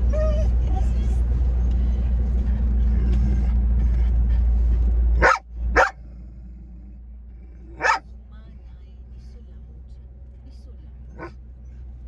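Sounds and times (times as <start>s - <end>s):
car rumble: 0.0s - 12.0s
dog barking: 5.2s - 6.0s, 7.7s - 8.0s, 11.2s - 11.4s.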